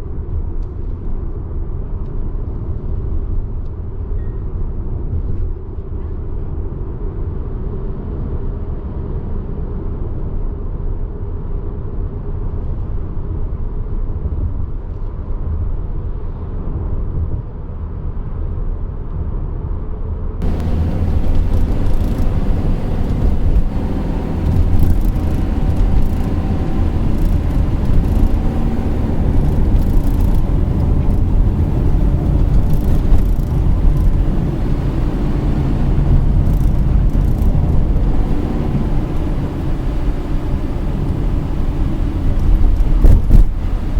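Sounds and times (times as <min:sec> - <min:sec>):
faint ticks: 0:20.4 - 0:34.4, 0:36.4 - 0:38.4
car cabin road rumble: 0:20.4 - 0:43.9.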